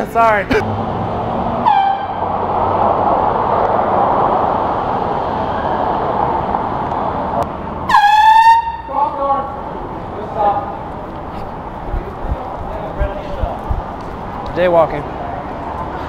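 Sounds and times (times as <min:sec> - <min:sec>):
street traffic passing: 0:00.0 - 0:16.0
handheld air horn blast: 0:01.6 - 0:02.2, 0:07.9 - 0:08.9.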